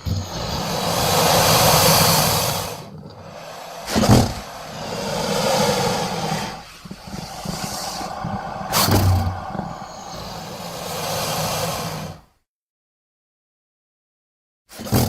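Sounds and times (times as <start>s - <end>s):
rasping creature growl: 0.0s - 12.2s
sharp hissing burst: 0.2s - 12.2s.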